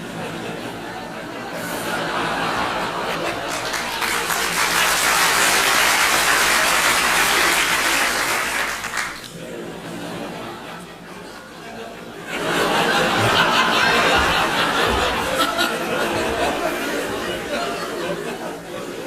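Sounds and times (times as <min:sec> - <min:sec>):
studio audience laughing: 0:00.0 - 0:19.0
audience clapping: 0:03.0 - 0:09.4.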